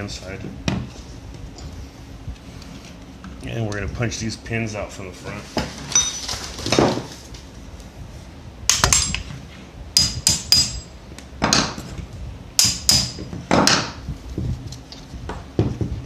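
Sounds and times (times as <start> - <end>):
hammer tapping metal punch: 8.7 - 9.3, 10.0 - 11.8, 12.6 - 14.0.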